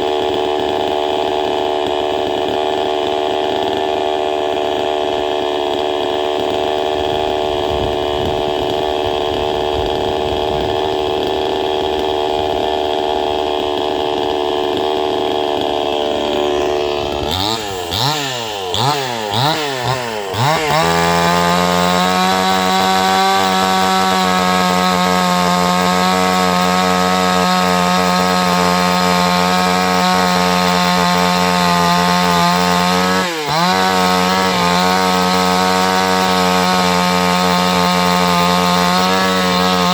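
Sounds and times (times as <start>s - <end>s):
chainsaw cutting log: 0.0s - 39.9s
chainsaw engine revving: 0.0s - 39.9s.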